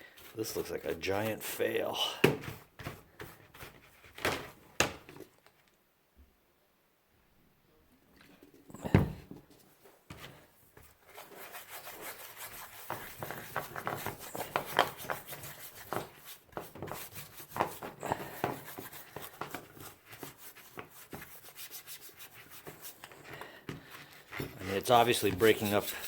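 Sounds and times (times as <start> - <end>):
paintbrush scrubbing: 0.0 - 2.7, 11.0 - 26.0.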